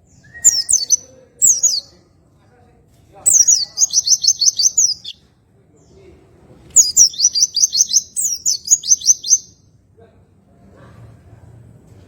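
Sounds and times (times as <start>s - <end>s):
white-eye bird singing chirps: 0.0s - 2.0s, 3.2s - 5.2s, 6.8s - 9.7s.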